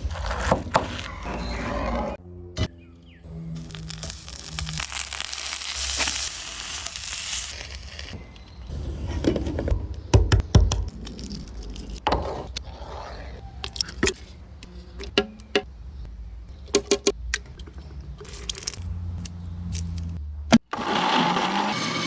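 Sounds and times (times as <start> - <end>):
food sizzling in a pan: 3.8 - 7.7.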